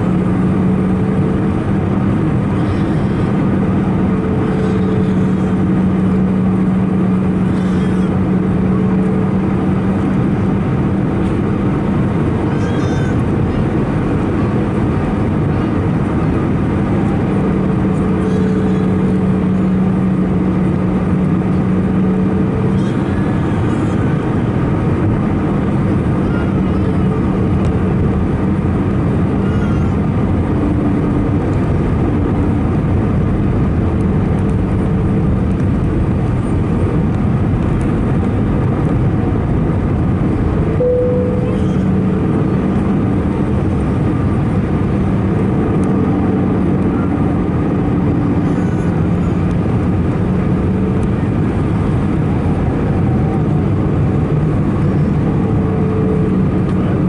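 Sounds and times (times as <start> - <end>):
jet engines low drone: 0.0 - 57.0
steady hums: 0.0 - 57.0
short tone: 40.8 - 42.2.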